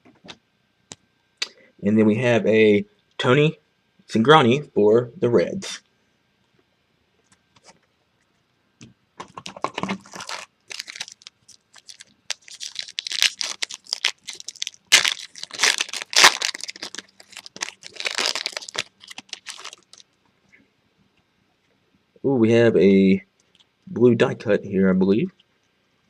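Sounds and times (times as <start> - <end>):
foil wrapper crinkling and tearing: 9.3 - 20.2.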